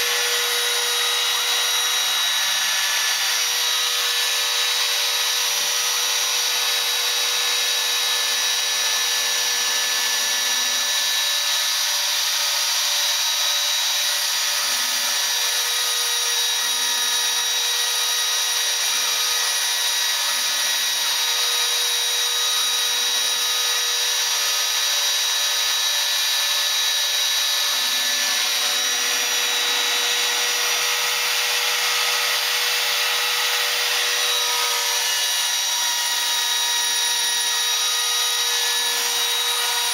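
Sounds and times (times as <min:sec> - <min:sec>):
spindle motor high whine: 0:00.0 - 0:39.9.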